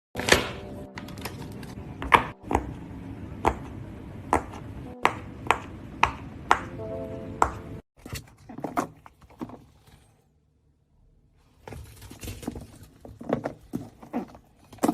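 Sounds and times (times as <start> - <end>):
soft background music: 0.2 - 3.3, 4.8 - 5.6, 6.5 - 7.8.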